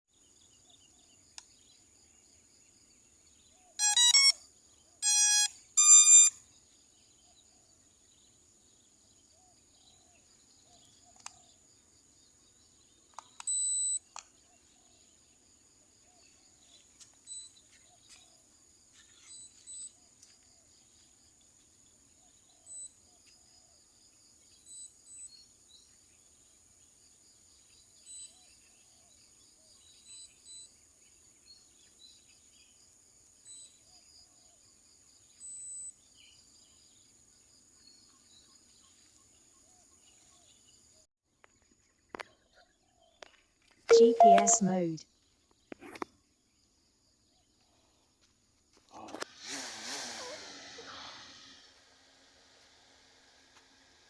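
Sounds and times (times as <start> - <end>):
faint chirps: 0.2 - 23.5, 24.4 - 26.0, 27.6 - 34.6, 35.2 - 40.8, 41.5 - 48.2
electronic beeps: 3.8 - 4.4, 5.0 - 6.4, 13.4 - 14.0, 43.9 - 45.0.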